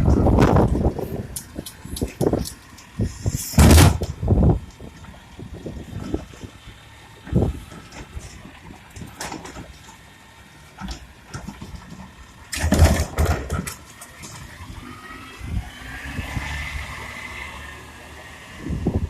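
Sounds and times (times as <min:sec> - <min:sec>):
garbage truck engine running: 0:00.0 - 0:19.0
loud clatter of knocks: 0:03.6 - 0:04.2, 0:10.8 - 0:13.8.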